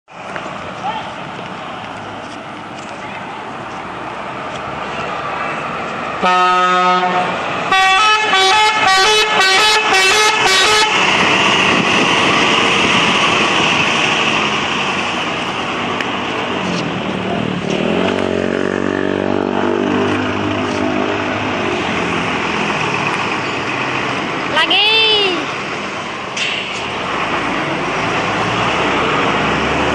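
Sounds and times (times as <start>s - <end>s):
bus engine running: 0.1s - 29.9s
bus horn playing a tune: 6.2s - 11.2s
steady rush of noise: 10.3s - 29.9s.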